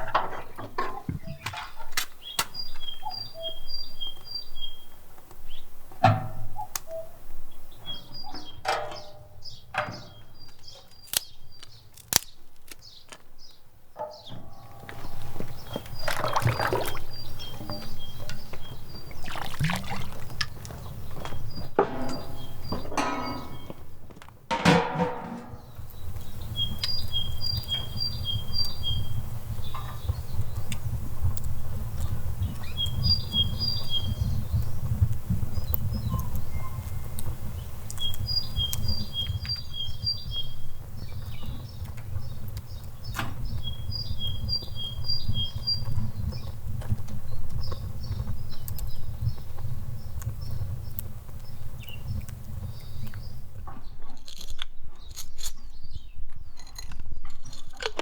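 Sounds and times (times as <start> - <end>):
clattering splashing handling noises: 0.0 - 2.6, 7.4 - 11.2, 14.0 - 26.1
songbird chirping: 0.0 - 57.6.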